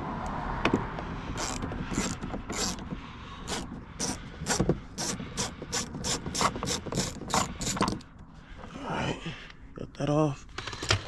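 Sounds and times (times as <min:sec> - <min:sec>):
hand ratchet clicking: 0:01.4 - 0:08.1.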